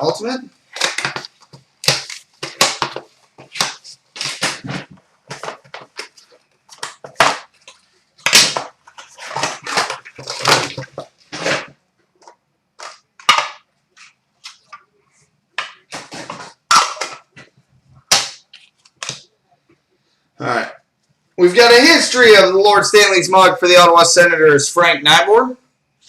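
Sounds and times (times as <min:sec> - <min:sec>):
plastic packaging tearing and crinkling: 0:00.7 - 0:11.8.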